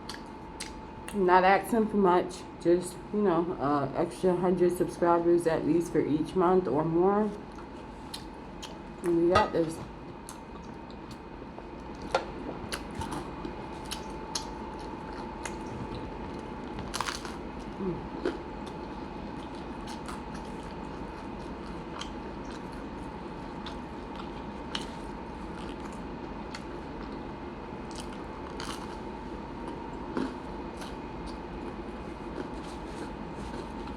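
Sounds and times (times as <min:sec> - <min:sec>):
person chewing sandwich: 0:00.0 - 0:01.2, 0:07.4 - 0:09.0, 0:10.2 - 0:33.9
steady background hum: 0:00.0 - 0:33.9.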